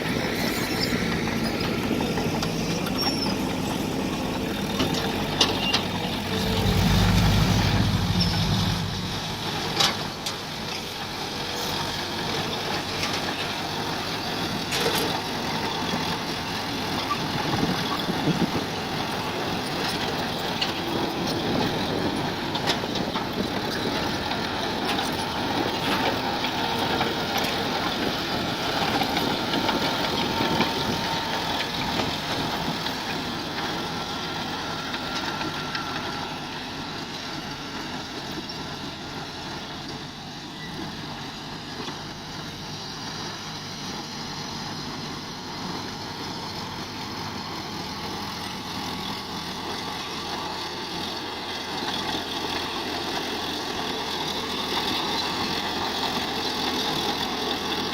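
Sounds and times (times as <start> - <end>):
excavator engine running: 0.0 - 57.9.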